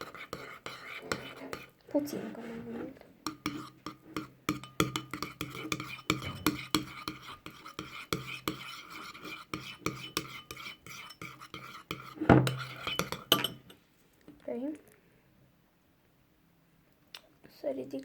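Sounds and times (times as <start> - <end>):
spoon clicking and scraping bowl: 0.0 - 2.3, 3.2 - 13.8.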